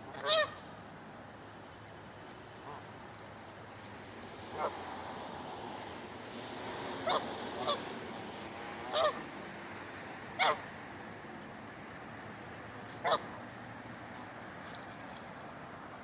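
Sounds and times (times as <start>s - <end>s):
steady background noise: 0.0s - 16.0s
geese honking: 0.1s - 0.7s, 2.6s - 3.0s, 4.5s - 4.8s, 7.0s - 7.9s, 8.8s - 9.3s, 10.4s - 10.6s, 12.9s - 13.4s.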